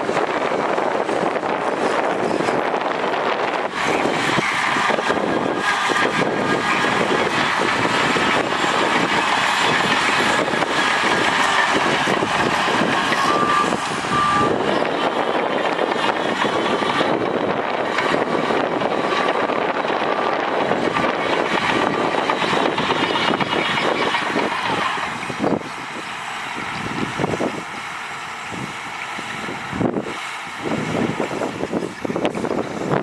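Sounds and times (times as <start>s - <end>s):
heavy diesel machinery engine: 0.0s - 33.0s
short beeps: 13.2s - 14.6s.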